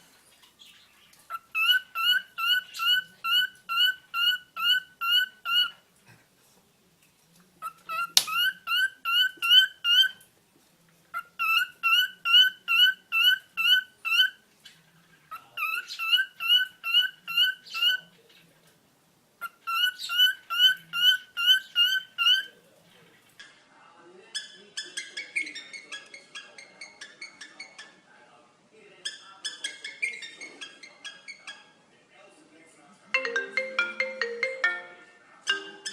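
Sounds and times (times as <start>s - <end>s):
cockatiel chatter: 0.0s - 5.9s, 7.3s - 10.3s, 10.9s - 18.7s, 19.4s - 23.7s, 24.3s - 28.1s, 29.0s - 31.9s, 35.6s - 35.9s.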